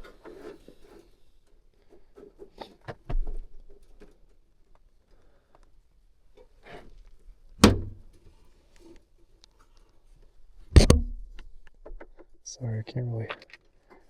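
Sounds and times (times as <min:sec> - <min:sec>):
sharp knocks: 0:10.8 - 0:11.3.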